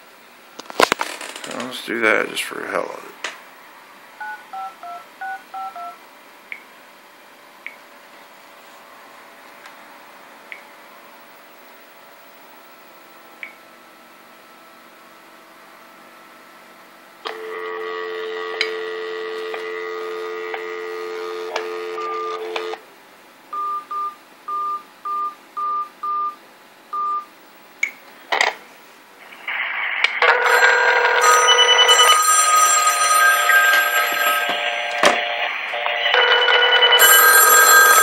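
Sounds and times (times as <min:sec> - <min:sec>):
touch-tone beeps: 0:04.2 - 0:06.0
telephone bell ringing: 0:17.3 - 0:22.8, 0:30.2 - 0:38.0
telephone dial tone: 0:17.3 - 0:22.8, 0:30.2 - 0:35.0, 0:35.8 - 0:38.0.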